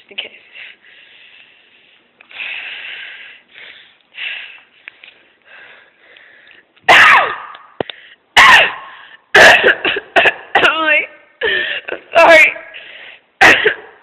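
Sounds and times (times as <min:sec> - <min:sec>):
person crying out: 0:06.9 - 0:07.5.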